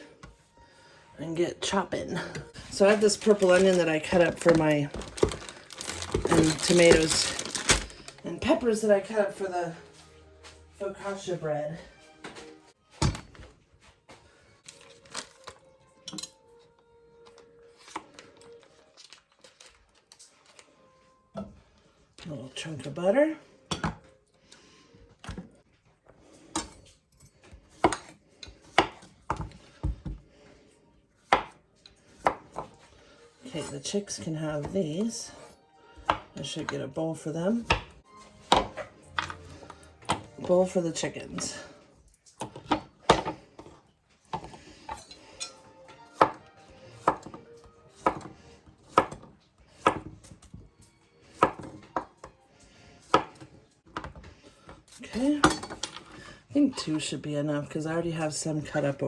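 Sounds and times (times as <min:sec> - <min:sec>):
knife chopping on cutting board: 0:27.8 - 0:30.2, 0:31.3 - 0:31.6, 0:37.7 - 0:39.4, 0:46.1 - 0:50.2, 0:53.1 - 0:54.2.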